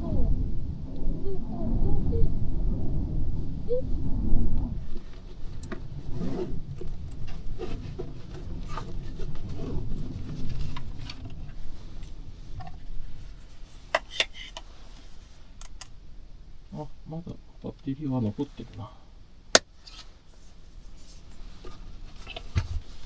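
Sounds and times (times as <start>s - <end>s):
low rumble: 0.0s - 13.8s.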